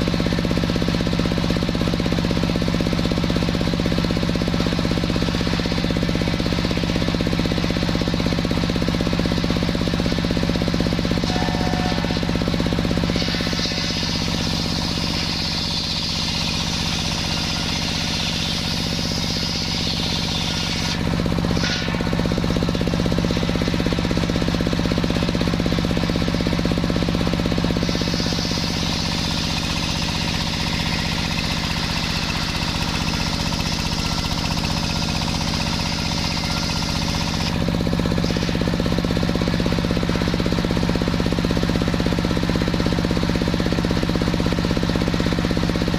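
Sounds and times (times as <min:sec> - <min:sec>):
sawmill machine hum: 0:00.0 - 0:45.9
saw blade hissing through wood: 0:11.2 - 0:22.6, 0:27.7 - 0:33.2.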